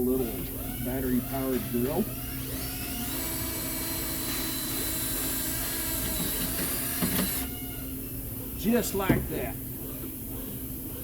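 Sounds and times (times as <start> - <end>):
cordless drill running: 0.6 - 7.9.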